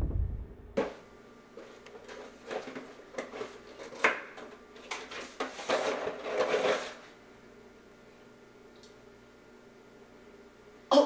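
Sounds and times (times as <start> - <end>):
rummaging through kitchen drawers: 4.8 - 7.0.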